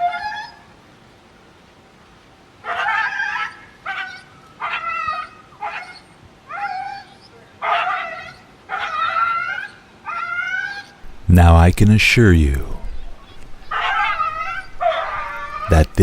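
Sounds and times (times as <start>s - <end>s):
dog whining and yelping: 0.0s - 0.7s, 2.6s - 11.0s, 13.0s - 15.7s.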